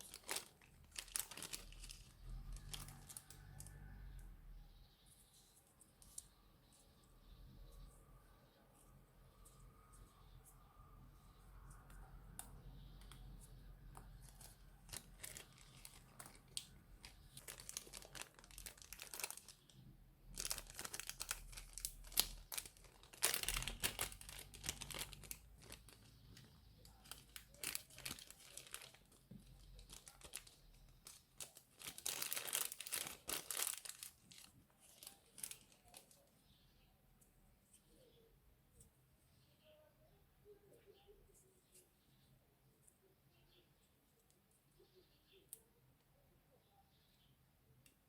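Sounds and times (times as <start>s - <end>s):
plastic bag crinkling with slime: 0.0s - 3.9s, 14.0s - 36.3s.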